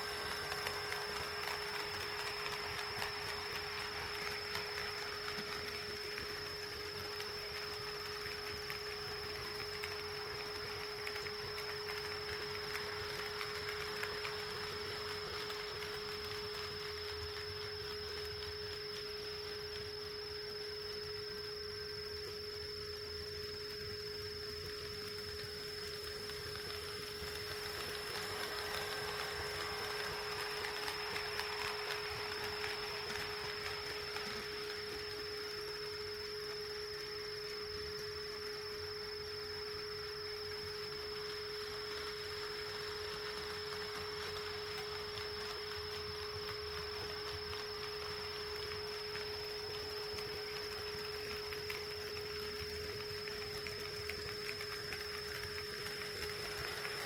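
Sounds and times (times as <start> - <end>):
rumble of wheels on track: 0.0 - 18.5, 25.7 - 35.8
steady electrical whine: 0.0 - 57.0.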